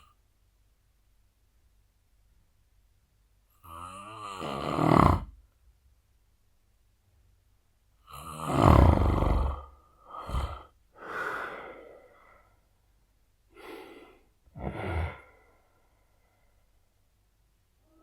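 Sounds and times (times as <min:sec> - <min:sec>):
man snoring heavily: 0:03.6 - 0:05.4, 0:08.1 - 0:12.0, 0:13.6 - 0:15.4
breathy exhale: 0:10.0 - 0:12.6, 0:13.5 - 0:16.7.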